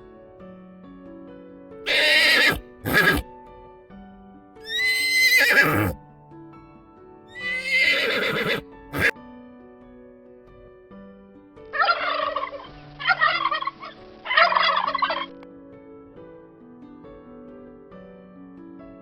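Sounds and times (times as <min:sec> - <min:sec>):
light background music: 0:00.0 - 0:19.0
horse neighing: 0:01.9 - 0:03.2, 0:04.7 - 0:06.0, 0:07.4 - 0:09.1.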